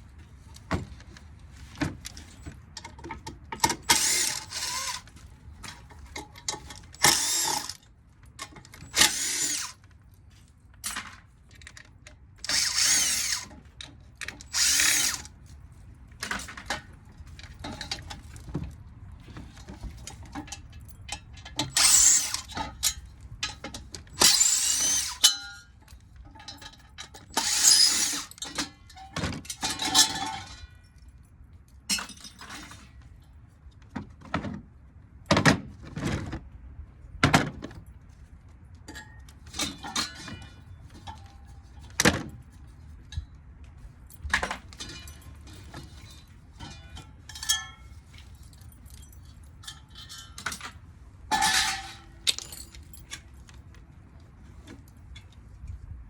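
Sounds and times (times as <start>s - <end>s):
power drill-driver running: 9.0s - 9.7s, 12.5s - 13.5s, 14.5s - 15.2s, 27.4s - 28.2s.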